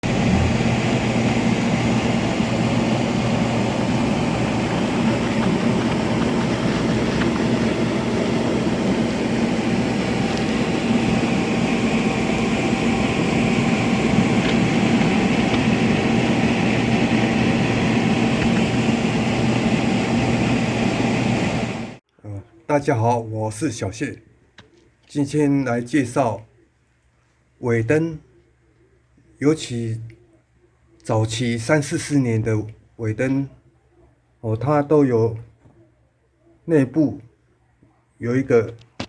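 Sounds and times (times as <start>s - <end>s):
machine motor drone: 0.0s - 22.0s.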